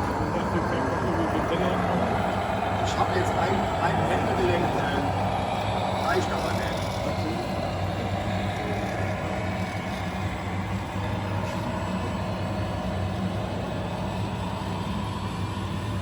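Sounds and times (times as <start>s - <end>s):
model truck engine hum: 0.0s - 16.0s
wavering high whine: 0.0s - 16.0s.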